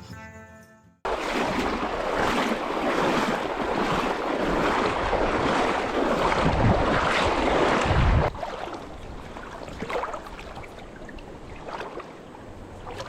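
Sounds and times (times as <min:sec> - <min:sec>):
river water rushing over rocks: 0:01.1 - 0:08.6
wind buffeting microphone: 0:01.2 - 0:11.8.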